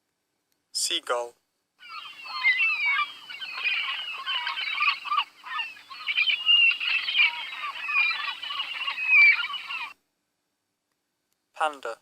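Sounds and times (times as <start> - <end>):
seagulls calling: 1.8 - 10.0.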